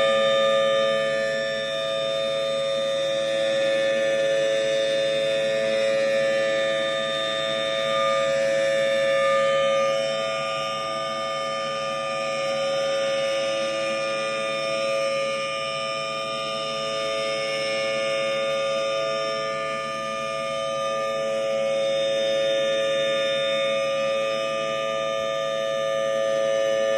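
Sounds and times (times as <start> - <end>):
civil defense siren wailing: 0.0 - 26.9.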